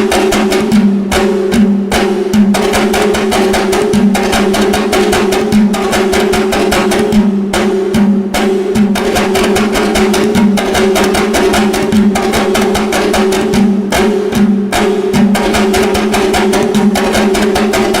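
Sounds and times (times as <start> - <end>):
fast dense drumming: 0.0 - 18.0.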